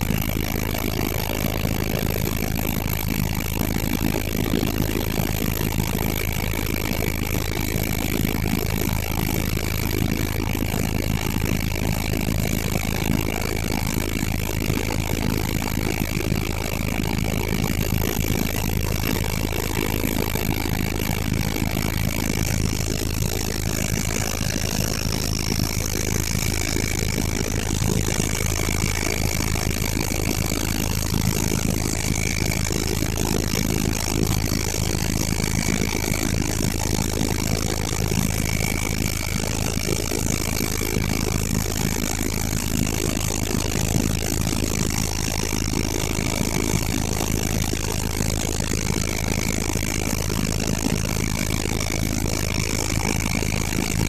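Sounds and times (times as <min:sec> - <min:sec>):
helicopter drone: 0:00.0 - 0:54.0
high-pitched whines: 0:16.4 - 0:42.7.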